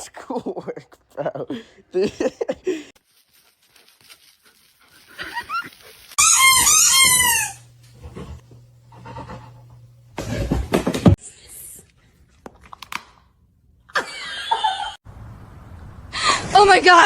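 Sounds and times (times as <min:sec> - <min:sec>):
dog whining yelps: 0:05.4 - 0:07.6.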